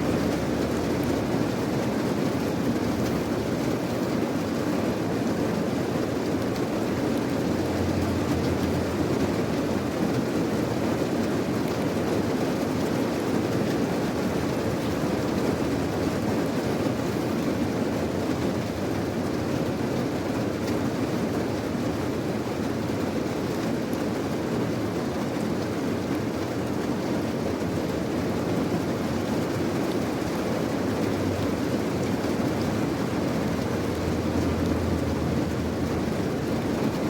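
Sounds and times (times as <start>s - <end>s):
steady rain: 0.0s - 37.0s.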